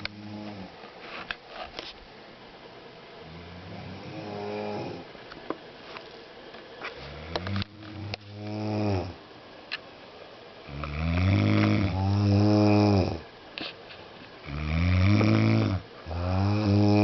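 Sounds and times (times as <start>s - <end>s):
person snoring: 0.0s - 0.8s, 3.2s - 5.1s, 7.0s - 9.2s, 10.7s - 13.3s, 14.4s - 17.0s.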